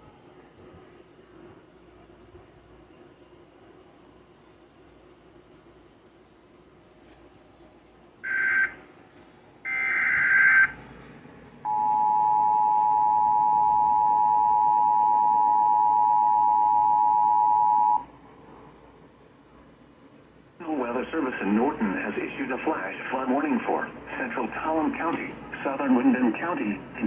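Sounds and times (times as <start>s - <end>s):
two-tone attention signal: 11.7s - 18.0s.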